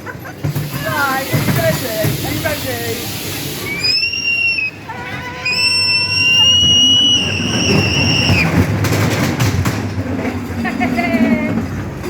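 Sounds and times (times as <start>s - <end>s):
high whistling tone: 3.6s - 4.8s, 5.4s - 8.5s
low rumble of ride: 4.7s - 12.0s.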